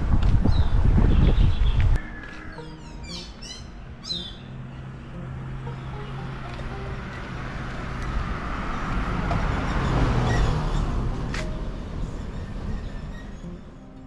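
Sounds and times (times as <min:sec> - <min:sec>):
bird chirping: 0:00.5 - 0:08.2
vehicle approaching: 0:02.0 - 0:14.0.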